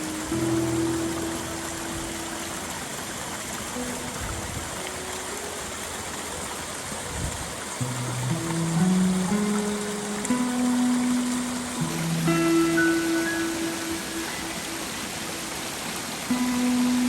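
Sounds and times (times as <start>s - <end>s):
soft music: 0.0s - 17.0s
waterfall rushing: 0.0s - 17.0s.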